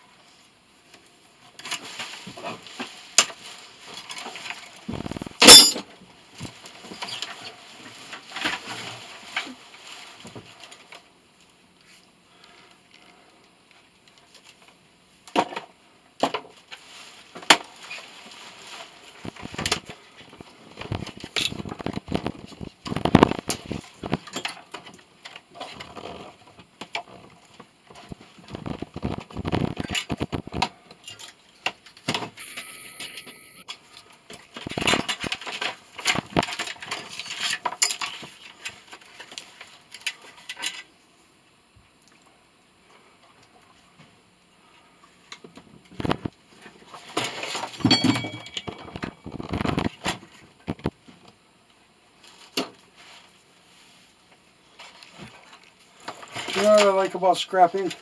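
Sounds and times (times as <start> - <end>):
metal parts clanking and scraping: 5.4 - 5.8, 47.9 - 49.7.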